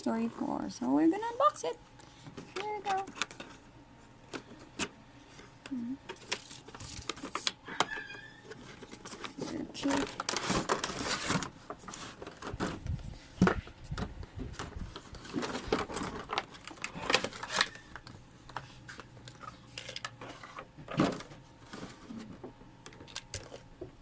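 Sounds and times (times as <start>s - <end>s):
packaging rustling and tearing: 6.1s - 13.0s, 14.0s - 18.2s.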